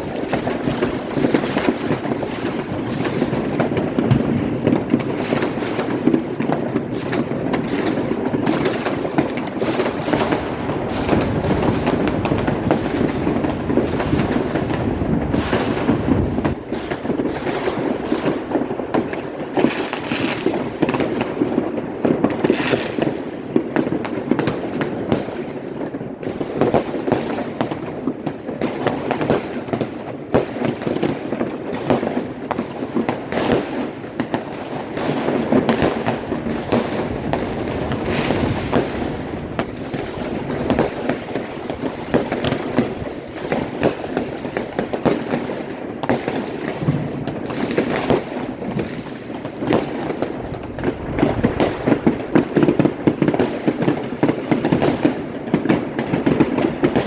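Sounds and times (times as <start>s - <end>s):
fireworks cracking and banging: 0.0s - 57.0s
continuous rumble: 49.8s - 52.4s.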